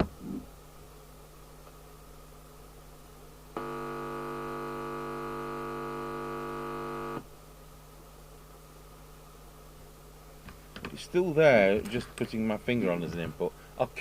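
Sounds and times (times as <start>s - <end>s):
faint steady hum: 0.0s - 14.0s
loudspeaker buzzing hum: 3.6s - 7.3s.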